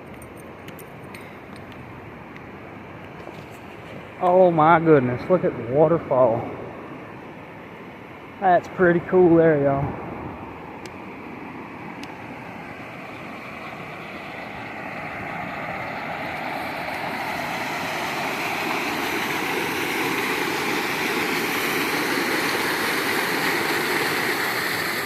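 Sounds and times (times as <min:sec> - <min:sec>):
waterfall rushing: 0:09.0 - 0:25.0.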